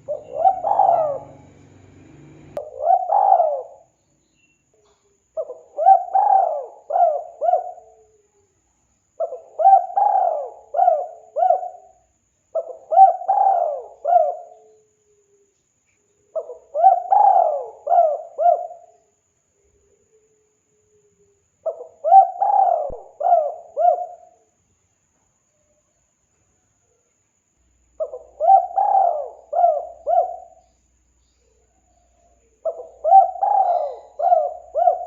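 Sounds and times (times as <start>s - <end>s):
dove cooing: 0.0s - 3.9s, 5.4s - 8.2s, 9.2s - 12.0s, 12.6s - 15.3s, 16.3s - 19.0s, 21.6s - 24.4s, 28.0s - 30.7s, 31.4s - 35.0s.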